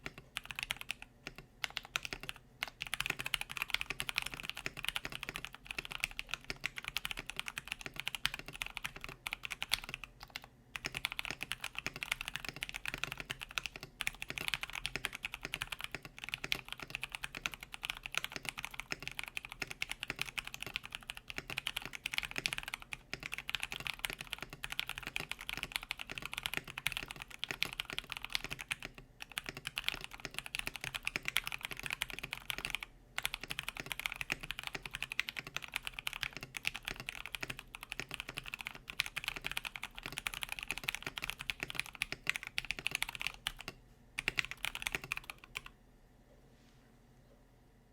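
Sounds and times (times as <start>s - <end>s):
fast mechanical keyboard typing: 0.0s - 45.7s.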